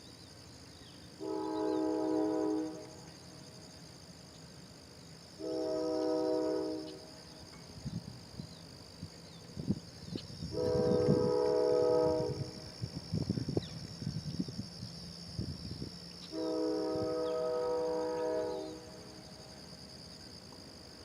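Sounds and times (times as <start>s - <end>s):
locomotive air horn blasts: 1.2s - 3.0s, 5.4s - 7.0s, 10.5s - 12.6s, 16.3s - 19.0s.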